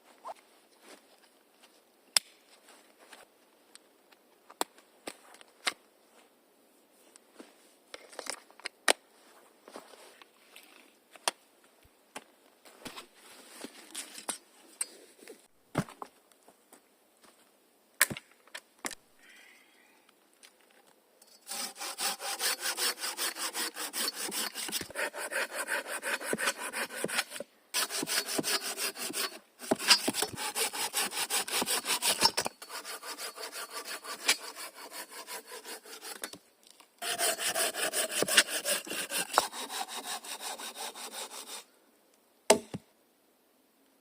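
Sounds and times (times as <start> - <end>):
hand saw cutting wood: 21.4 - 36.4, 37.0 - 41.7.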